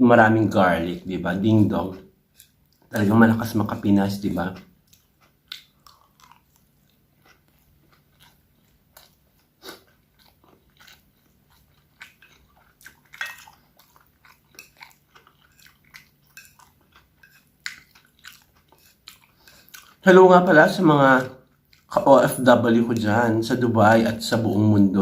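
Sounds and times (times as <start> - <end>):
person chewing food: 1.0 - 24.6.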